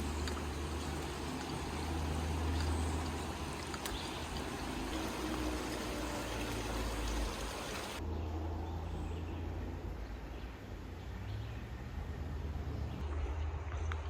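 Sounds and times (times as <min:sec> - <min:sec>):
rushing outdoor hiss: 0:00.0 - 0:08.0.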